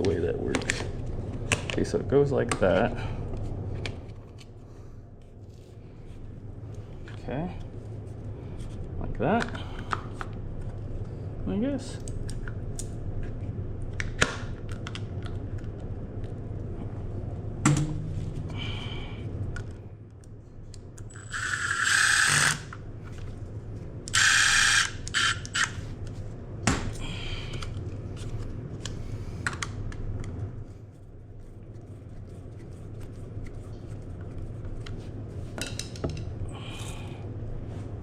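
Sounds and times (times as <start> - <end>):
low hum: 12.2 - 21.5.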